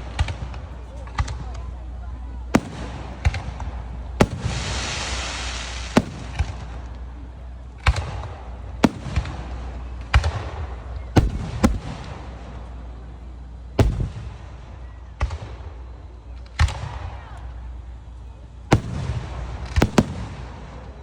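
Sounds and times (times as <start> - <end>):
fireworks bangs: 2.4 - 21.0
fireworks crackling hiss: 2.4 - 21.0.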